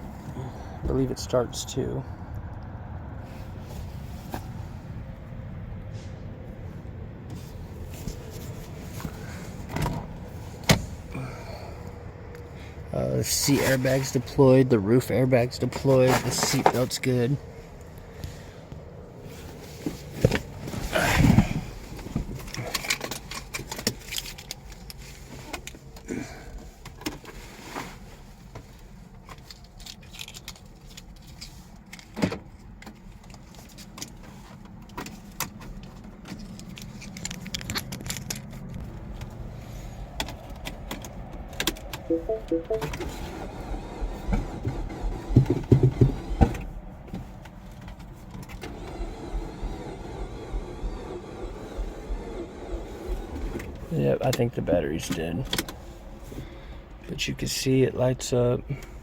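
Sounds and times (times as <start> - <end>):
car beeps: 42.1 - 43.0.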